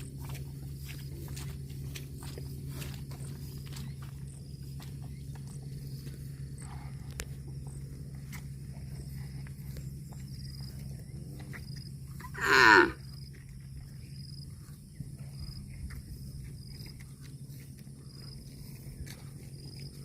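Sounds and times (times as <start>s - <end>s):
steady low hum: 0.0s - 20.0s
cow mooing: 12.1s - 13.1s.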